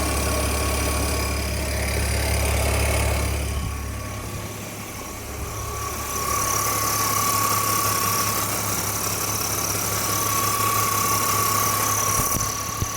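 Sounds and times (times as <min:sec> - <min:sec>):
car engine idling: 0:00.0 - 0:12.9
high whine: 0:03.0 - 0:08.6.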